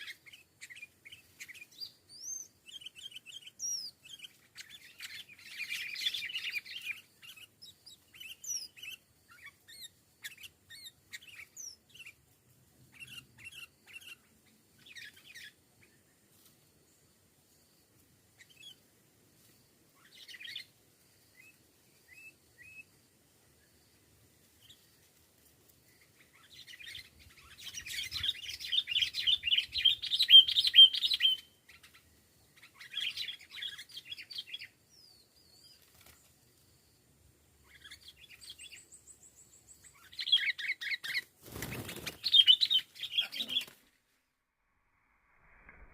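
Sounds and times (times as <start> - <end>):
bulbuls chirping and chattering: 0.0 - 16.1, 25.9 - 36.4, 37.6 - 43.8.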